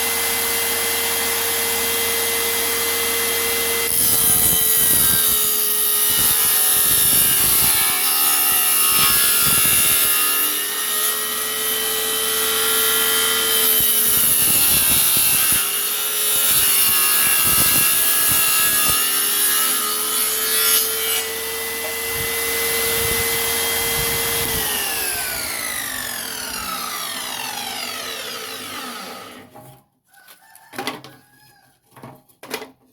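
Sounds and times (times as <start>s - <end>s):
circular saw cutting wood: 0.0s - 29.6s
saw winding down whine: 21.5s - 29.5s.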